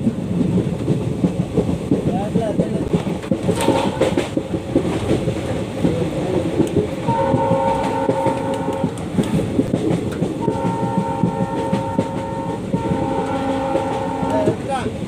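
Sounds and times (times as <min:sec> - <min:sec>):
train rattling on rails: 0:00.0 - 0:15.0
locomotive horn blasts: 0:03.6 - 0:04.3, 0:07.1 - 0:09.0, 0:10.4 - 0:14.6.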